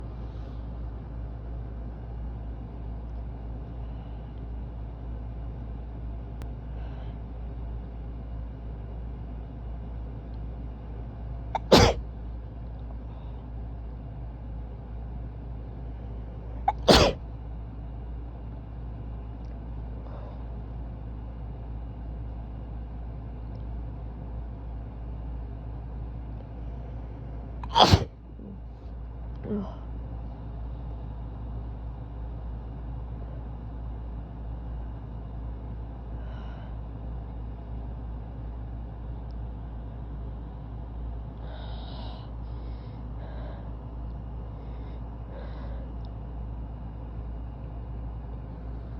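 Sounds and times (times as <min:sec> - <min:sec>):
steady low hum: 0:00.0 - 0:48.9
person sneezing: 0:11.6 - 0:12.0, 0:16.7 - 0:17.2, 0:27.6 - 0:28.6.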